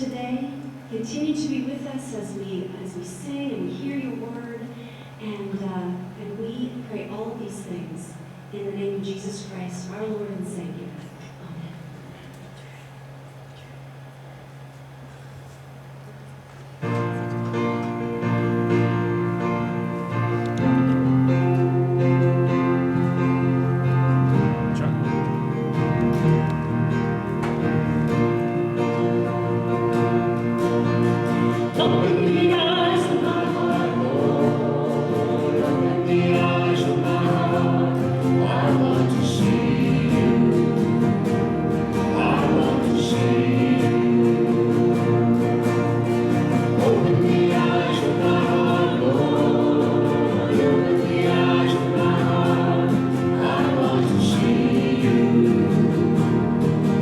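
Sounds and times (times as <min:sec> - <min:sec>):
church worship music: 0:00.0 - 0:57.0
group of voices singing: 0:29.1 - 0:57.0.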